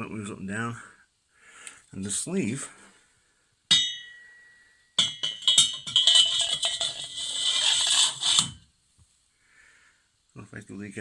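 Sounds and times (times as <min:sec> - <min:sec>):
metal clatter and rattles: 0:05.0 - 0:08.4
metal parts clinking: 0:05.0 - 0:08.4.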